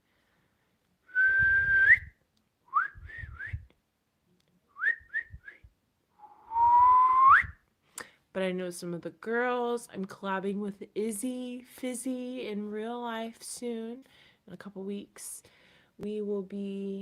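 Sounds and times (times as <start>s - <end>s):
woman whistling: 1.1s - 3.7s, 4.8s - 7.6s.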